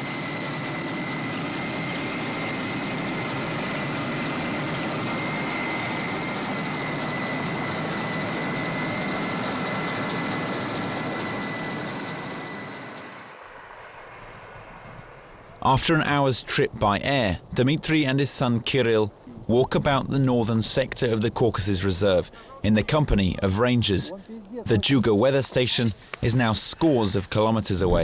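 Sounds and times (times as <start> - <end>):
helicopter engine and rotor: 0.0 - 13.4.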